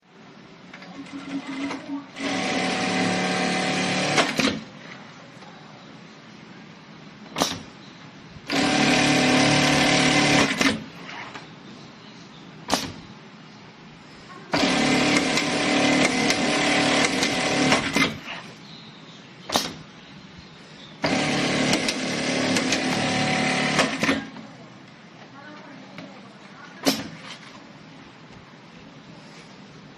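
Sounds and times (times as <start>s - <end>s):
sewing machine stitching: 0.7s - 4.7s, 8.5s - 11.3s, 14.5s - 18.4s, 21.0s - 24.3s.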